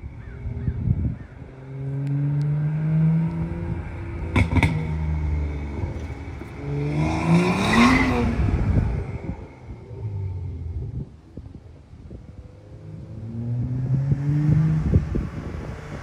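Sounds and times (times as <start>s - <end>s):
car engine droning and accelerating: 0.0s - 16.0s
exhaust cracks: 3.3s - 9.5s.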